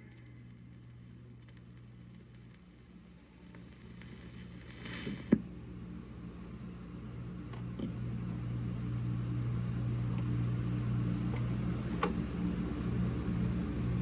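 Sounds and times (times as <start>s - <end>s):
faint hiss: 0.0s - 6.7s
low electrical hum: 0.0s - 14.0s
vinyl surface clicks: 11.3s - 12.2s.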